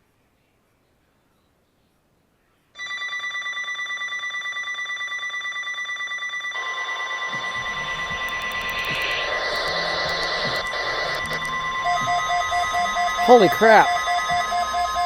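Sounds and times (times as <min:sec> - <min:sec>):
rapidly pulsing electronic beep: 0:06.6 - 0:15.0.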